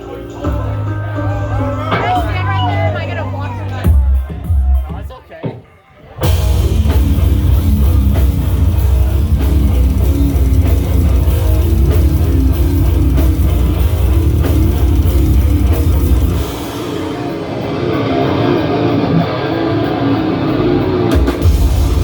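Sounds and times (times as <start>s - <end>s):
pounding drum kit: 3.8s - 5.6s, 6.2s - 22.0s
distorted guitar: 6.1s - 22.0s
heavy bass: 6.2s - 22.0s.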